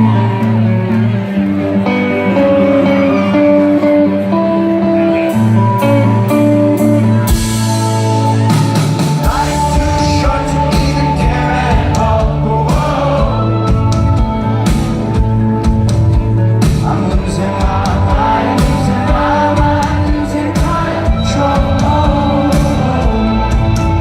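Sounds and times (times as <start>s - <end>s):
rock band playing live: 0.0s - 24.0s
person singing: 2.2s - 14.9s, 16.6s - 24.0s
drums: 5.2s - 24.0s.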